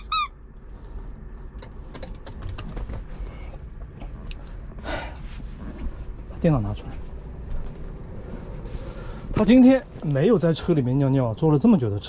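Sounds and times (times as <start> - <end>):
squeaky dog toy squeak: 0.0 - 0.4
low steady rumble: 0.0 - 12.0.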